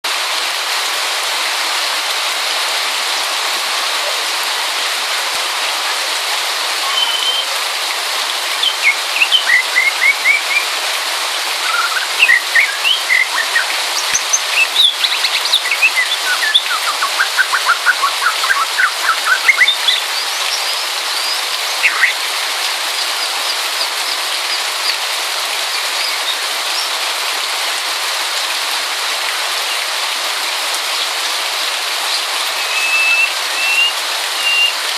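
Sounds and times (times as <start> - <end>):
steady rain hiss: 0.1 - 34.9
bird singing whistles and trills: 6.9 - 7.5, 8.6 - 10.7, 11.6 - 22.2, 32.1 - 34.8.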